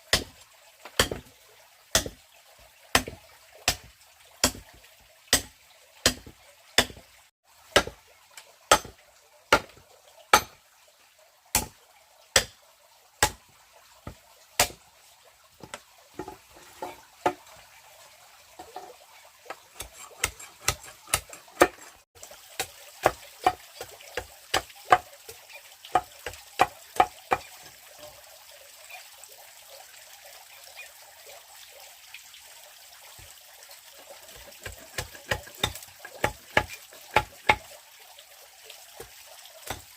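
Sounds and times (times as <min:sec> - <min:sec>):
sharp chopping strikes: 0:01.0 - 0:01.2, 0:01.9 - 0:02.2, 0:05.3 - 0:07.0, 0:12.4 - 0:12.6.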